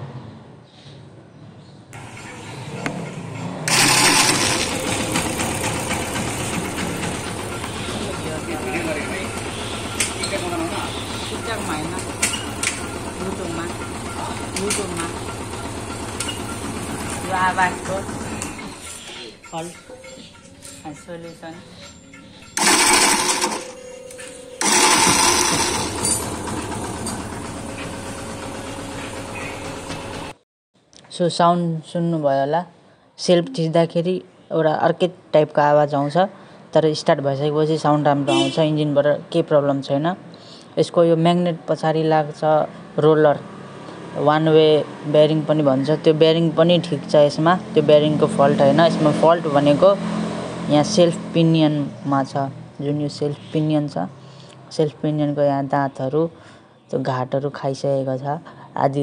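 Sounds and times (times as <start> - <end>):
motorcycle engine running: 2.0 - 30.4
starter motor cranking: 3.7 - 30.4.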